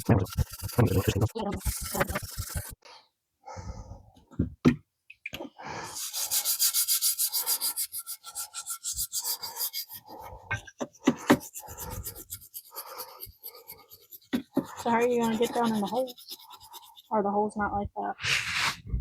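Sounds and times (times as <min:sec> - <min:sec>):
brush scrubbing metal part: 0:00.0 - 0:02.8, 0:06.0 - 0:17.4
knocks and scrapes: 0:00.0 - 0:02.8, 0:08.2 - 0:12.6, 0:13.3 - 0:17.1.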